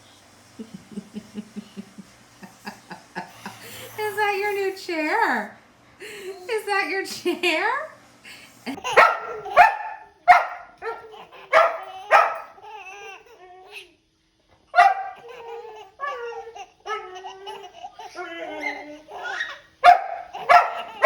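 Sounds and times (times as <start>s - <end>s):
dog barking: 8.8s - 12.6s, 14.8s - 15.3s, 19.8s - 21.0s
dog yelping: 8.8s - 12.6s, 14.8s - 15.4s, 18.5s - 21.0s.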